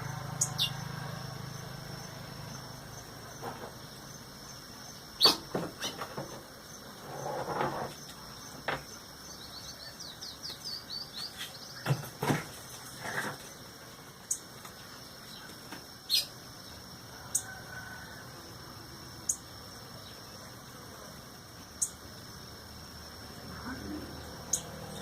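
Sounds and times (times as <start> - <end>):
small bird chirping: 0.0 - 6.8, 7.9 - 12.0, 14.2 - 17.5, 19.2 - 20.2, 21.8 - 22.0, 23.5 - 25.0.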